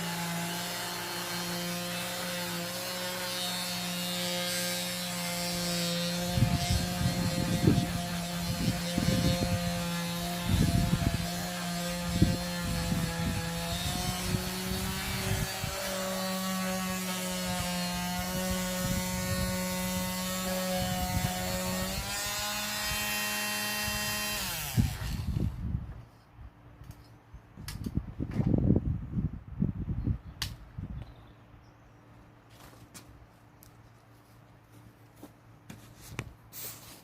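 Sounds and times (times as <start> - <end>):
electric sander on wood: 0.0 - 25.6.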